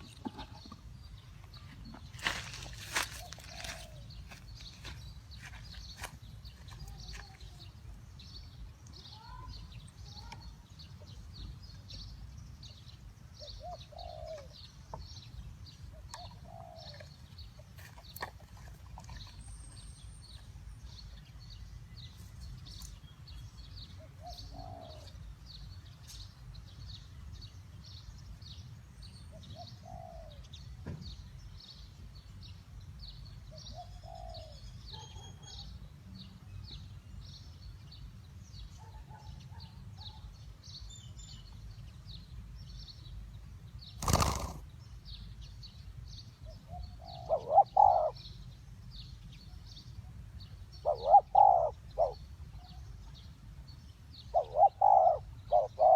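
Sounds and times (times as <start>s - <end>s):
doves cooing: 2.3s - 4.1s, 13.5s - 14.6s, 15.9s - 17.2s, 24.0s - 25.2s, 29.6s - 30.4s, 33.7s - 34.6s, 44.0s - 44.7s, 46.7s - 48.2s, 50.8s - 52.2s, 54.3s - 55.9s.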